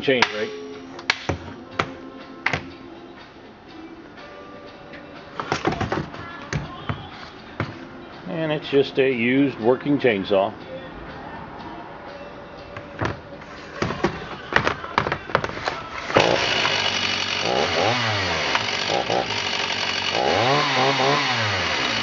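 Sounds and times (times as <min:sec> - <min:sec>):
chainsaw pull-start rattling: 0:14.6 - 0:22.0
chainsaw engine running and revving: 0:16.0 - 0:22.0.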